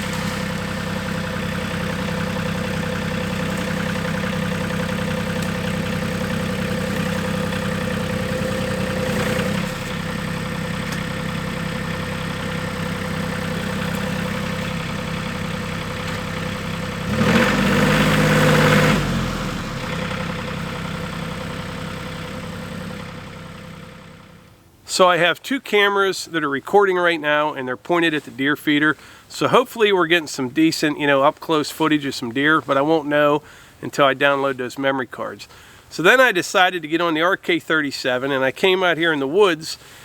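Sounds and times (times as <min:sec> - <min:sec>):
tractor diesel engine running: 0:00.0 - 0:25.0.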